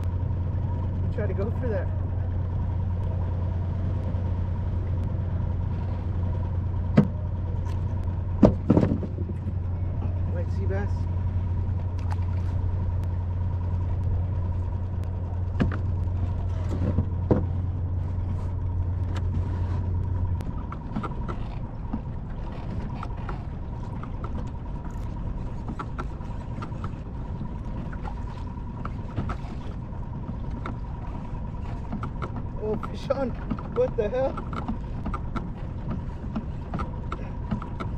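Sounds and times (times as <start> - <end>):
outboard motor humming: 0.0 - 37.9
water noise: 0.0 - 37.9
light clicks: 31.7 - 37.9.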